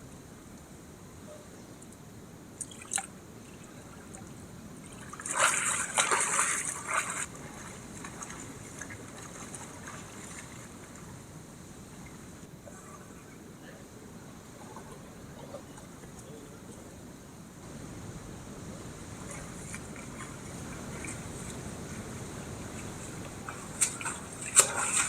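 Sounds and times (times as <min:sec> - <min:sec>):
water pouring and splashing: 0:04.8 - 0:11.1, 0:19.0 - 0:25.0.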